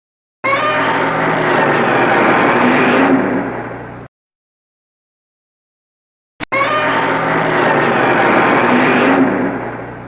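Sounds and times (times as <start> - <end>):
monster roar: 0.5 - 3.5, 6.6 - 9.8.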